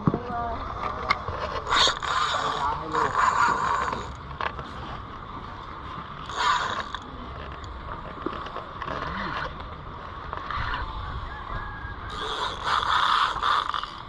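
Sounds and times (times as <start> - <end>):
fishing reel clicking whir: 1.6 - 4.6, 6.2 - 9.6, 12.1 - 14.0.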